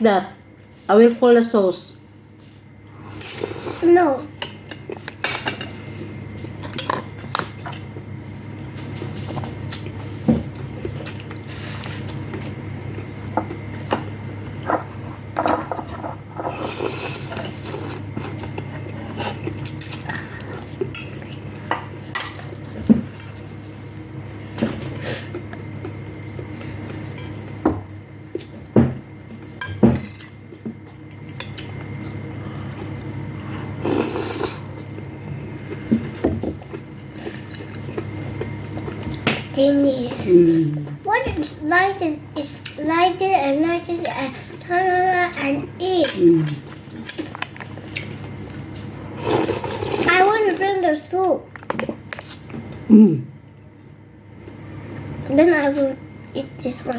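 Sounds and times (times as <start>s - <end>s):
steady low hum: 0.0s - 56.9s
cutlery clinking against bowls: 20.9s - 22.4s, 29.6s - 31.7s.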